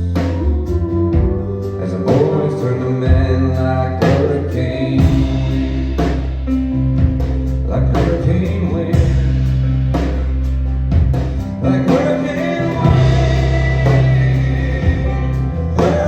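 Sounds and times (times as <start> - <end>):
bass line: 0.0 - 16.0
guitar: 0.0 - 16.0
person singing: 0.2 - 6.2, 11.6 - 16.0.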